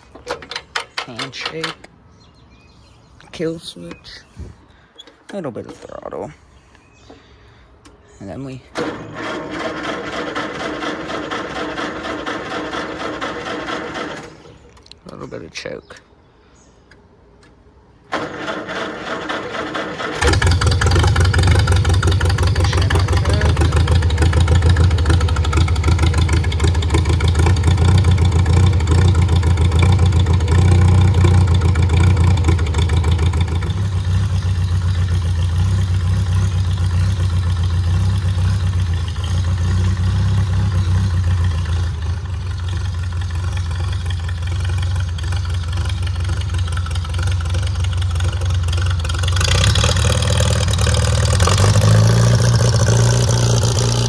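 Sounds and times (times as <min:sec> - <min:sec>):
tractor engine running: 0:08.7 - 0:15.2, 0:18.1 - 0:54.0.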